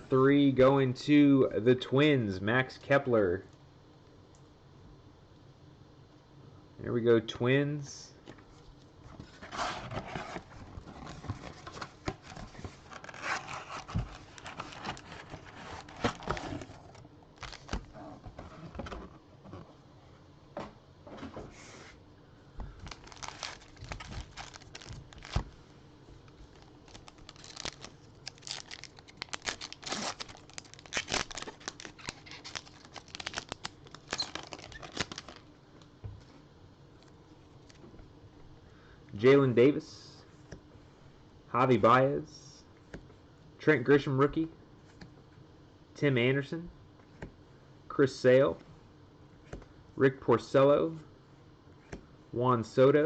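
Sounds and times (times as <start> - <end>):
foil wrappers tearing and crinkling: 12.8 - 17.9, 22.8 - 25.5, 26.4 - 35.5.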